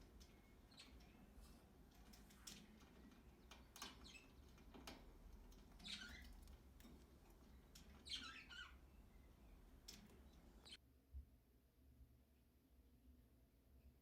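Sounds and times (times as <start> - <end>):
budgerigars chirping: 5.8 - 6.4, 7.9 - 9.6.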